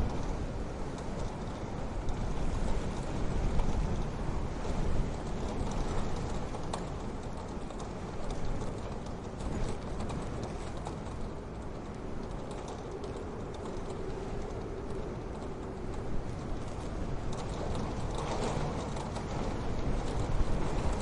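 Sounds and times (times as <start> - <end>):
steady low rumble: 9.2 - 21.0.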